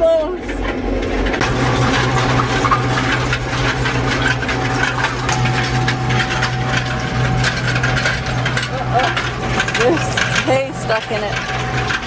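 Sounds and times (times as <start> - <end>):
machinery rattling clatter: 0.0 - 12.0
tractor engine running: 0.0 - 12.0.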